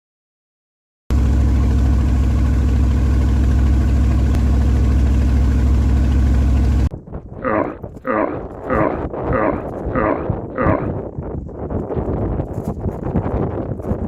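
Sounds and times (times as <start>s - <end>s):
boat engine idling: 1.1s - 6.9s.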